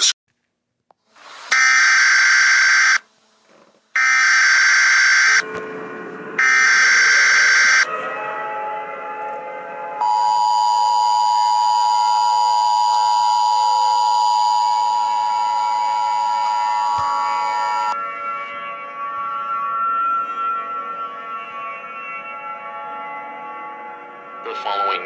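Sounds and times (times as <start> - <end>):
screeching data tone bursts: 1.5 - 3.0, 4.0 - 5.4, 6.4 - 7.9, 10.0 - 18.0
two-tone attention signal: 6.4 - 7.9, 10.0 - 18.0.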